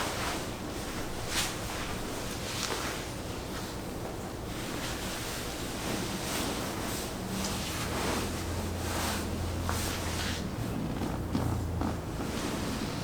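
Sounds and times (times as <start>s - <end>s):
hands rustling and rubbing clothing: 4.7s - 13.0s.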